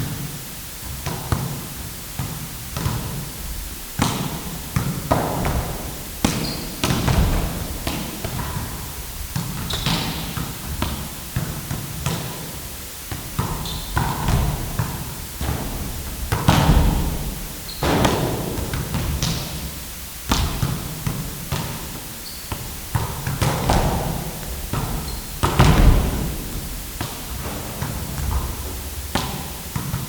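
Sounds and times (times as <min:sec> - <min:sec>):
basketballs bouncing on court: 0:01.0 - 0:03.4, 0:04.0 - 0:30.0
sneaker squeaks on floor: 0:06.3 - 0:07.3, 0:09.4 - 0:10.4, 0:13.4 - 0:14.4, 0:17.6 - 0:18.0, 0:22.2 - 0:22.7, 0:24.7 - 0:26.0.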